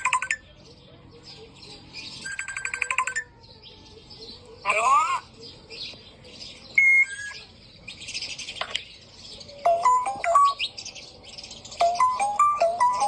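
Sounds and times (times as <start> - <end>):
parrot mimicking ringtone melody: 0.0 - 0.4, 2.2 - 3.4, 6.8 - 7.4, 9.6 - 10.6, 11.8 - 13.0
parrot chirping and chattering: 0.0 - 3.4, 4.4 - 13.0.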